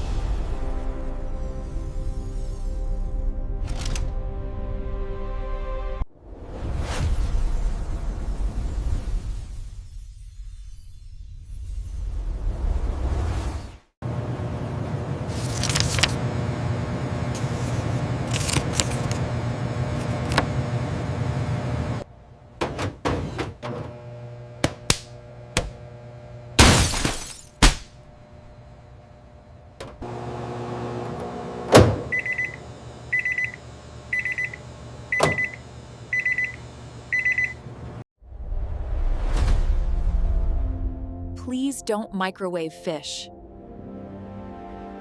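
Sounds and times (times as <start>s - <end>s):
microwave running hum: 14.0s - 26.9s, 27.5s - 38.0s
high beep: 32.1s - 32.6s.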